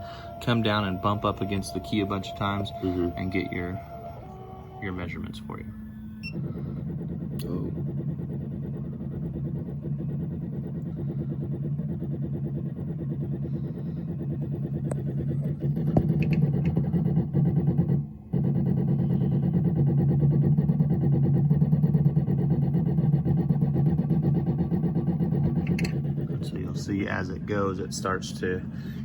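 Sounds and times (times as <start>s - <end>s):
key cutting machine motors buzzing: 0.0s - 29.0s
probe tapping key: 6.2s - 26.8s.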